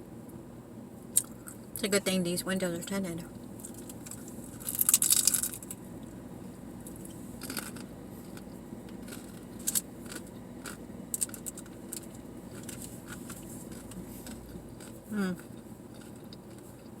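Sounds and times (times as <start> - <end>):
chewing with clicks and smacks: 1.1 - 1.8, 3.6 - 17.0
crunchy bite into taco: 6.8 - 17.0.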